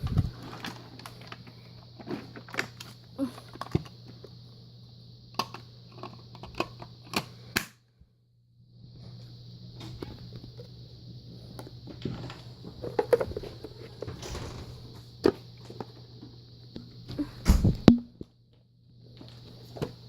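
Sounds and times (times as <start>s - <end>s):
sharp clicks and knocks: 14.1s - 15.1s.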